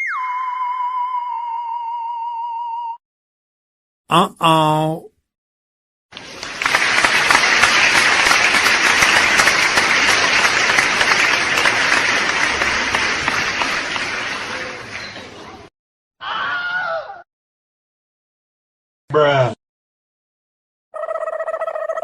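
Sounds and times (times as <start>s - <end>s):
crowd applauding: 6.1s - 15.6s.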